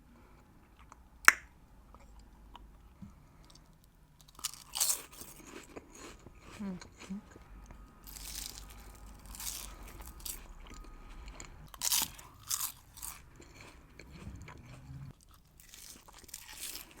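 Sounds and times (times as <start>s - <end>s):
crispy roll crunching: 3.5s - 7.4s, 8.0s - 17.0s.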